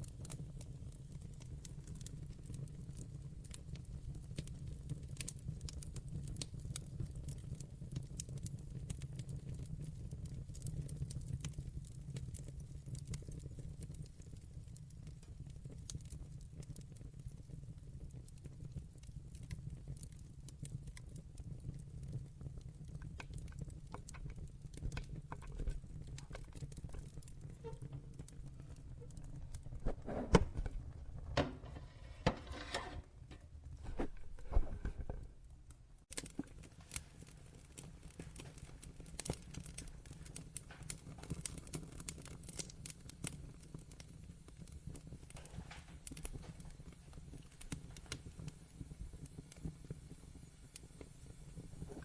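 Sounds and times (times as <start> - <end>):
low rumble of flames: 0.0 - 52.0
wood fire crackling: 0.0 - 52.0
sharp pops of fire: 23.0 - 35.3, 36.1 - 52.0.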